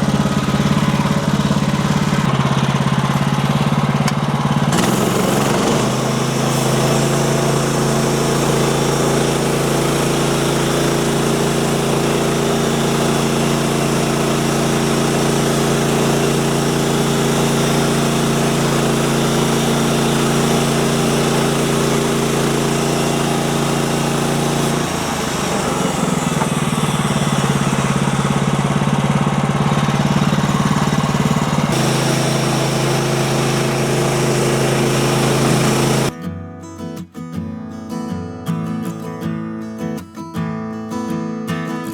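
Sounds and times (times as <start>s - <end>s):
small gasoline engine running: 0.0s - 36.1s.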